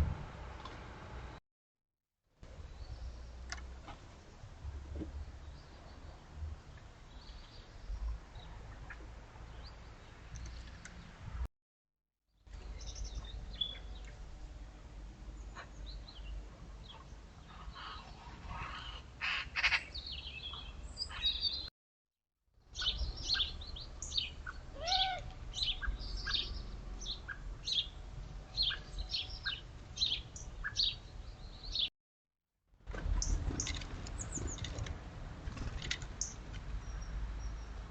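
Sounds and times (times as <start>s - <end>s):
small birds chirping: 5.1s - 11.2s, 12.5s - 14.6s, 15.3s - 21.7s, 22.6s - 31.9s, 33.1s - 34.8s, 35.8s - 37.9s.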